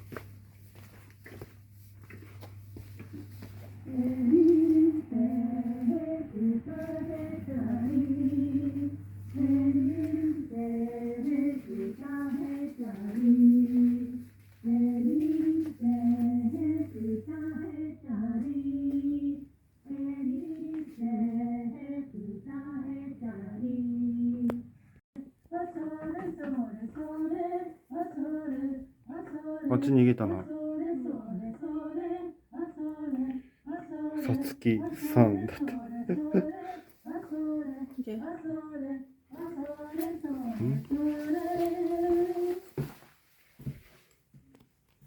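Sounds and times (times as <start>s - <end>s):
low steady hum: 0.0s - 19.5s
high voice singing: 39.6s - 42.6s.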